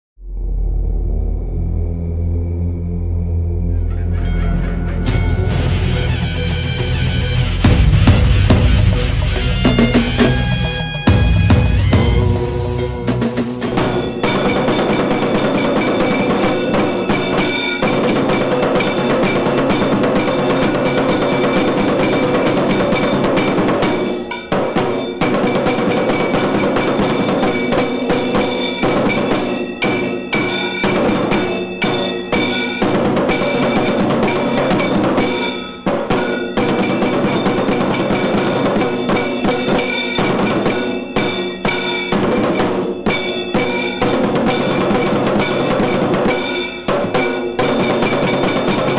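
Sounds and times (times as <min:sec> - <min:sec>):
drums and cymbals ensemble: 0:01.3 - 0:48.9
ringing tones: 0:12.0 - 0:48.9.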